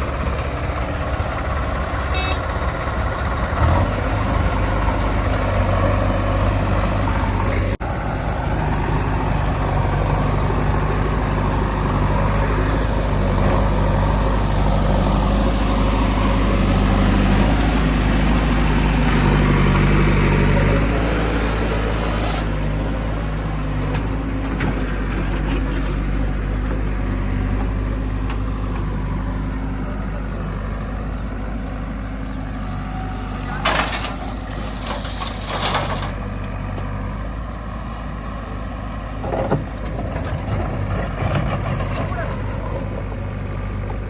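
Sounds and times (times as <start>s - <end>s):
diesel machinery running: 0.0s - 44.0s.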